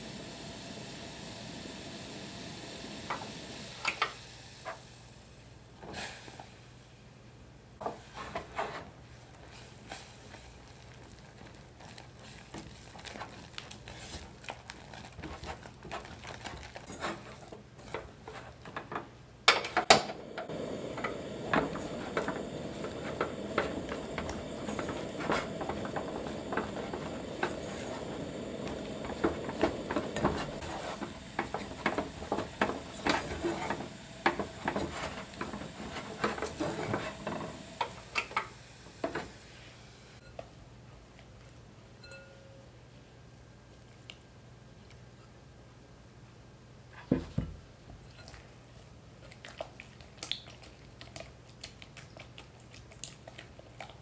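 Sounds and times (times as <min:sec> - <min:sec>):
steady low hiss: 0:00.0 - 0:16.0, 0:16.9 - 0:48.0
utensil stirring in a pot: 0:09.4 - 0:18.7, 0:20.4 - 0:38.0.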